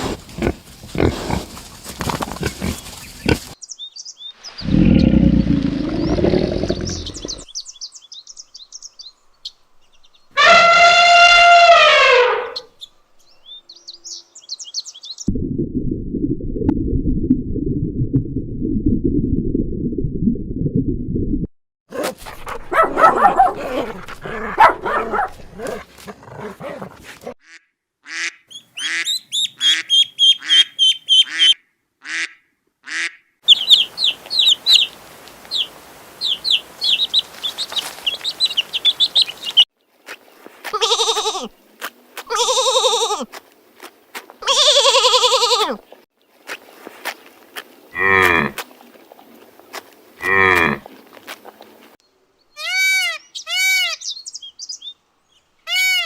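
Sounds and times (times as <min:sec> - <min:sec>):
low animal call: 0:04.6 - 0:07.5
high-pitched animal chirps: 0:33.5 - 0:34.9.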